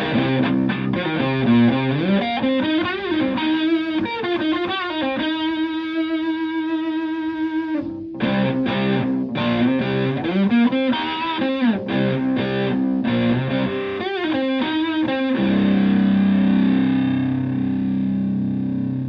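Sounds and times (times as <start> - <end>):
distorted electric guitar: 0.0 - 19.0.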